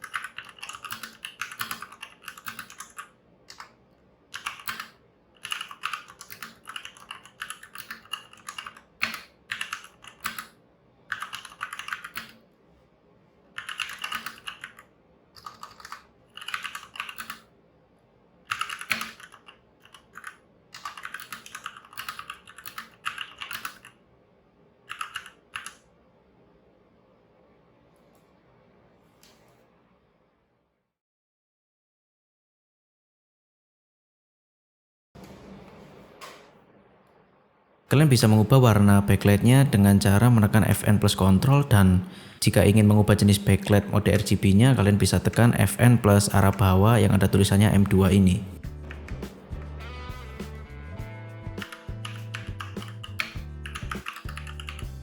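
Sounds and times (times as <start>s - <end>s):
mechanical keyboard typing: 0.0s - 12.4s, 13.6s - 17.5s, 18.5s - 24.0s, 24.9s - 25.8s, 51.6s - 55.0s.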